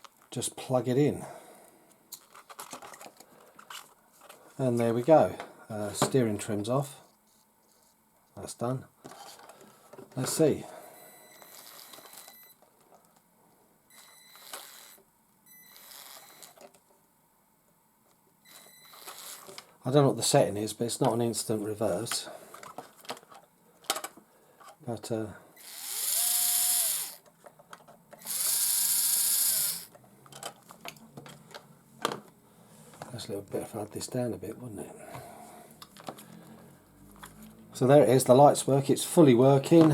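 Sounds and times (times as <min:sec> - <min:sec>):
electric motor whirring: 0:15.7 - 0:16.6, 0:25.6 - 0:27.2, 0:28.2 - 0:29.9.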